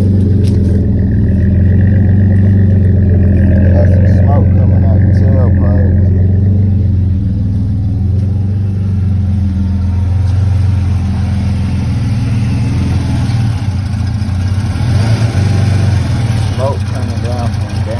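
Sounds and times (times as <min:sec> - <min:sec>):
car engine idling: 0:00.0 - 0:17.9.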